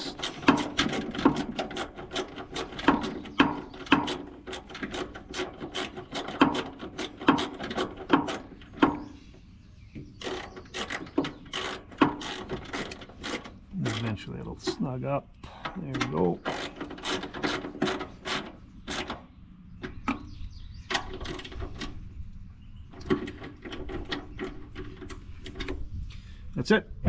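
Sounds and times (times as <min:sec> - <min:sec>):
ratchet wrench clicking: 0:10.2 - 0:14.0.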